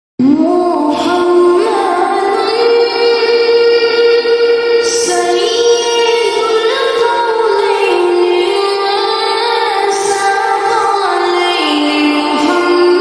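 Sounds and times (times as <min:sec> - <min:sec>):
devotional song in high voice: 0:00.2 - 0:13.0.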